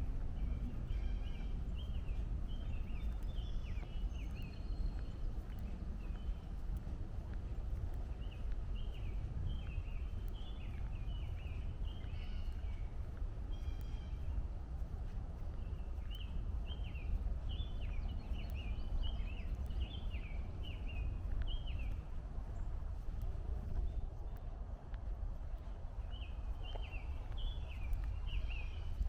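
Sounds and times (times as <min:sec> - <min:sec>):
songbird chirping: 0:07.2 - 0:24.1, 0:26.0 - 0:29.0.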